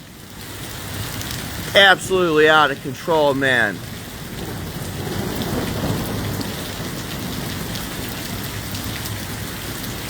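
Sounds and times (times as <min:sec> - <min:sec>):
rain falling: 0:00.0 - 0:10.0
low rumble of thunder: 0:03.8 - 0:10.0.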